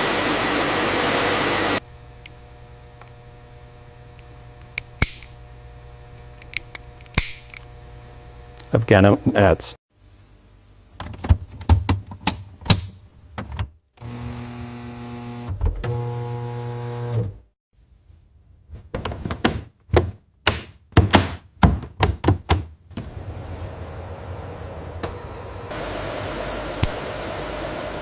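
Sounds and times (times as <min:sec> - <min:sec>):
machine hum: 0:00.0 - 0:09.4, 0:22.9 - 0:28.0.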